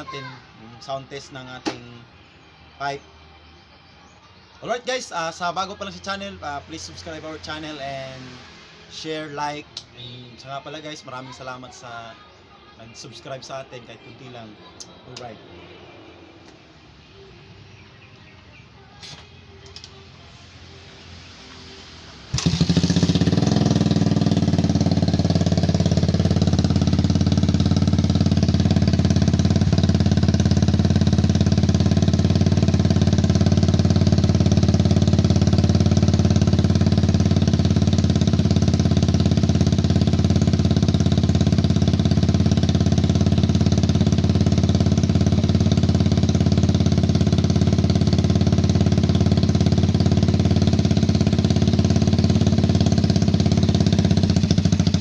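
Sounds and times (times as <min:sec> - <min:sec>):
motorcycle engine idling: 0:22.3 - 0:55.0.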